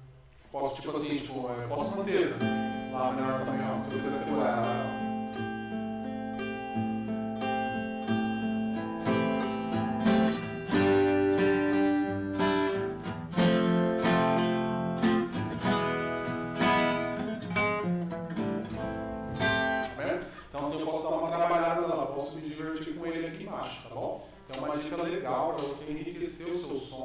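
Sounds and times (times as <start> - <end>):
acoustic guitar strumming and picking: 1.7 - 22.0.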